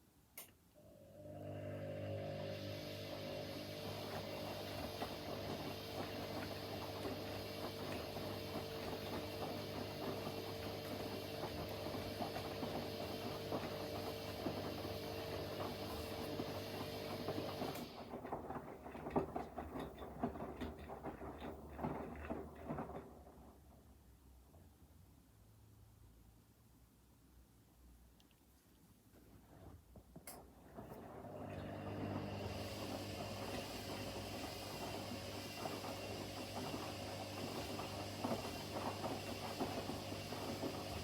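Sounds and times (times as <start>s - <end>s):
washing machine motor whine: 0.8s - 23.6s, 30.7s - 41.0s
drum and laundry clunking: 3.8s - 23.5s, 32.1s - 41.0s.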